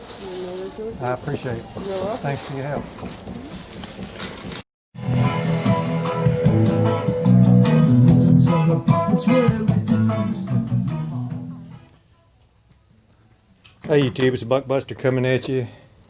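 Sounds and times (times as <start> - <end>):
guitar and bass music: 5.0 - 12.0.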